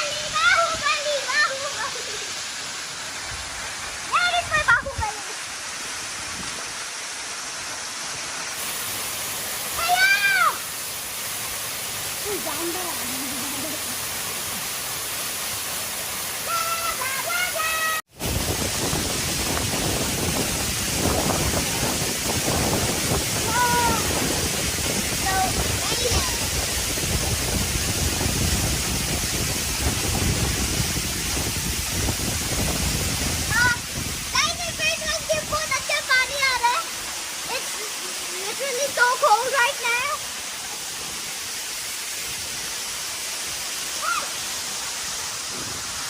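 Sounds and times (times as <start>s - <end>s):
waterfall rushing: 0.0s - 46.0s
person exclaiming: 23.4s - 24.2s.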